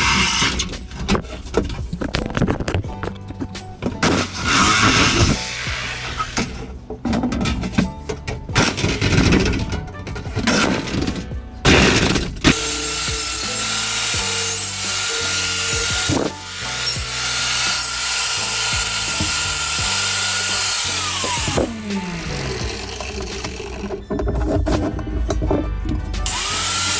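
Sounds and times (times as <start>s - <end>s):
power tool cutting: 0.0s - 0.8s, 4.0s - 6.5s, 11.7s - 24.0s, 26.2s - 26.9s
background music with bass line: 0.0s - 26.9s.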